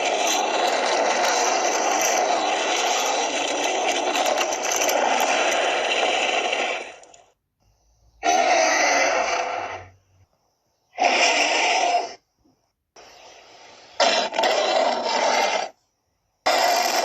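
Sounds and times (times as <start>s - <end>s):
dinosaur roars: 8.2s - 10.0s.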